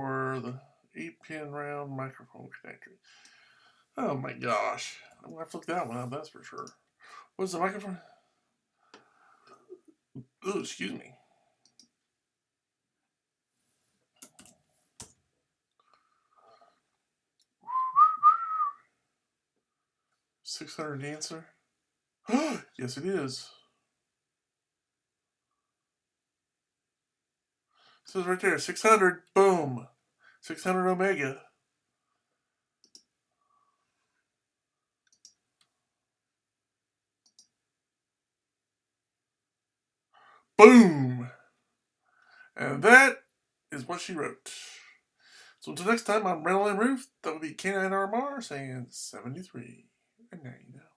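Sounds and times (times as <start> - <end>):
soft clicks: 6.6 - 6.8, 11.6 - 12.0, 14.2 - 15.2, 32.8 - 33.1, 35.1 - 35.7, 37.2 - 37.6
person whistling: 17.7 - 18.8.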